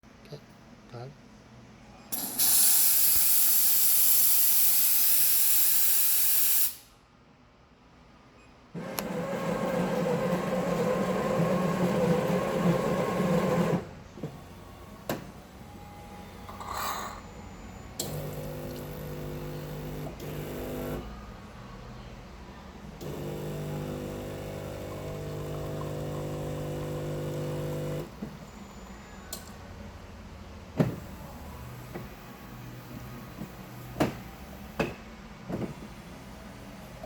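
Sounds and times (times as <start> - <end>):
machine motor running: 18.0 - 21.1, 23.0 - 28.1.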